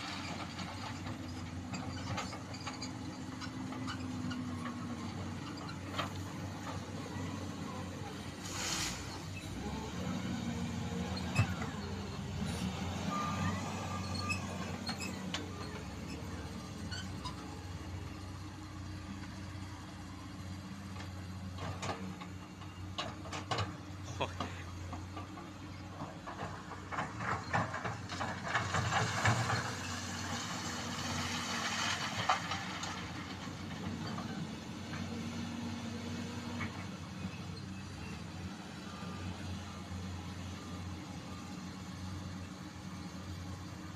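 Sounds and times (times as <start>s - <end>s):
excavator diesel engine running: 0.0s - 43.9s
hiss: 8.4s - 9.2s.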